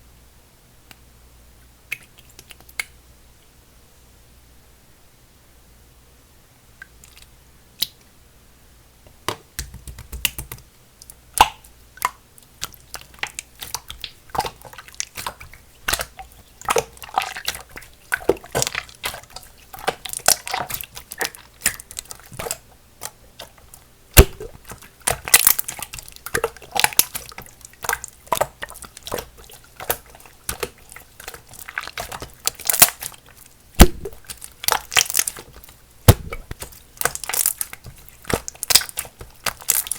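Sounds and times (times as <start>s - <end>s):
slime squishing and popping: 11.3s - 39.9s.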